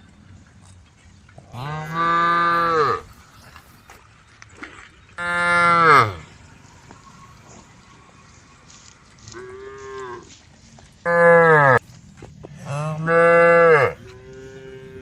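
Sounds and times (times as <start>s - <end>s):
cattle mooing: 1.4s - 3.7s, 5.2s - 6.3s, 11.0s - 11.8s, 12.4s - 15.0s.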